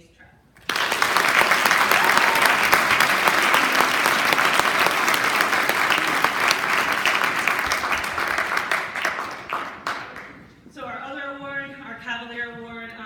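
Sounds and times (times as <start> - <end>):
audience applause: 0.6 - 10.5.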